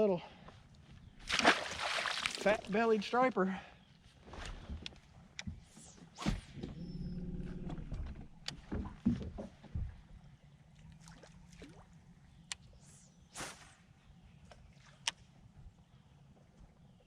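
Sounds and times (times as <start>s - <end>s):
knocks and clunks of gear: 6.6s - 10.0s.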